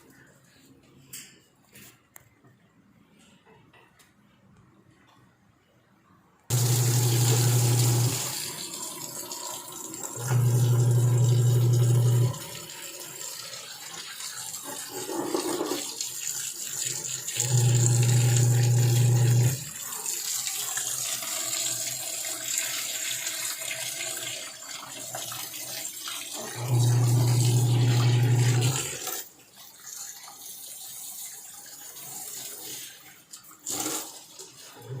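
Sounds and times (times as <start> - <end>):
low electric pump hum: 6.5 - 8.6, 10.0 - 12.5, 17.4 - 19.7, 26.6 - 28.8
washing machine running water: 6.5 - 35.0.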